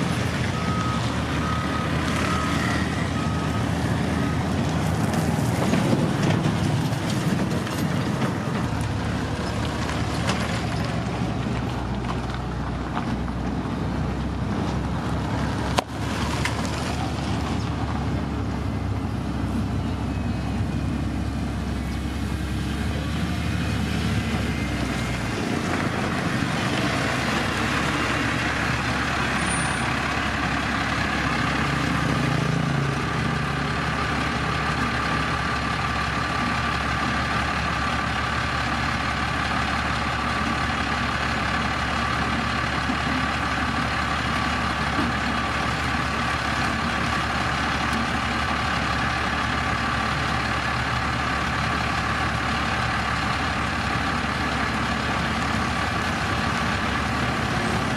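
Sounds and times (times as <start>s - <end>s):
diesel road machinery engine: 0.0s - 57.9s.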